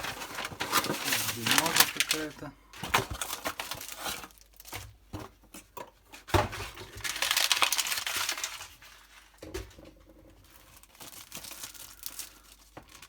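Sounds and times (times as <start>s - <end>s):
paper packing rustling: 0.0s - 9.4s, 10.4s - 13.0s.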